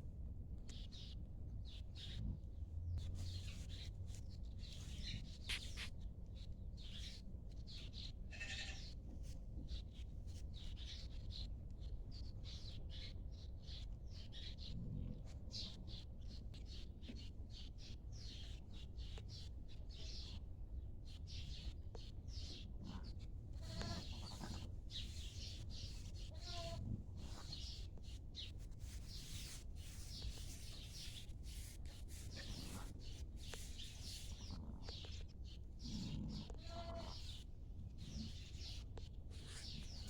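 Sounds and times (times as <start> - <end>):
small birds chirping: 0.7 - 8.9, 21.1 - 40.0.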